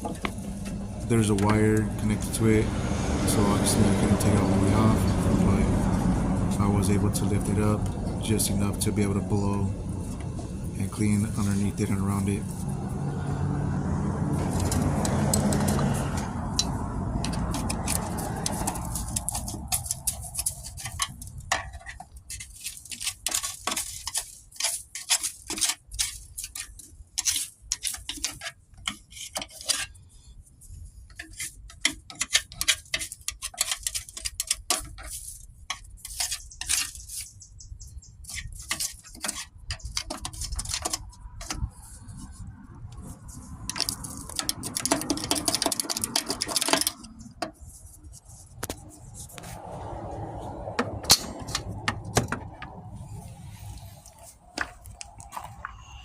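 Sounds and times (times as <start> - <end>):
metal clicks and clatter: 14.4 - 30.0, 31.1 - 37.3, 38.2 - 41.7, 43.7 - 47.6
rushing noise: 48.8 - 56.0.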